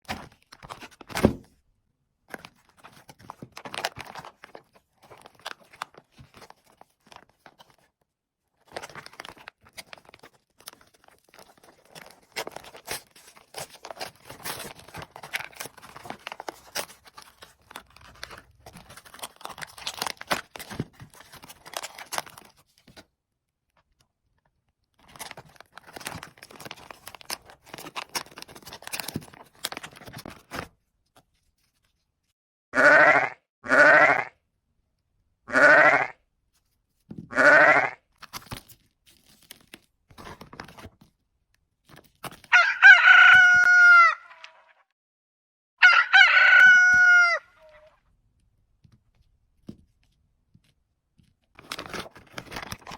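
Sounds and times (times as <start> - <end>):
packaging crinkling and tearing: 2.3 - 7.9, 8.6 - 23.0, 24.9 - 30.7, 38.2 - 41.1, 41.8 - 42.6, 51.6 - 52.9.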